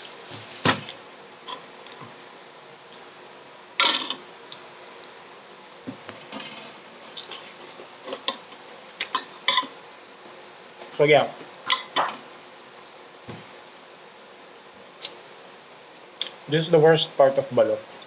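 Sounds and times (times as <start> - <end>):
utensils clinking on tableware: 6.2 - 7.3.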